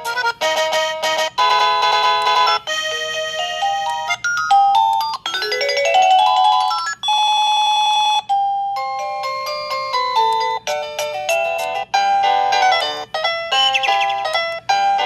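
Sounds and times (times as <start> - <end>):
electronic ringtone melodies: 0.0 - 15.0.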